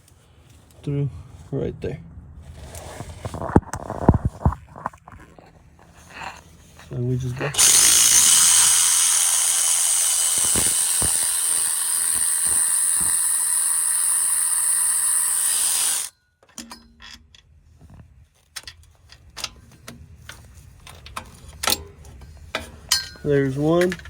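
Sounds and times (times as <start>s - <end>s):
air ratchet running: 7.5s - 16.1s
tool and bolt clicks: 16.4s - 17.5s, 18.5s - 24.0s.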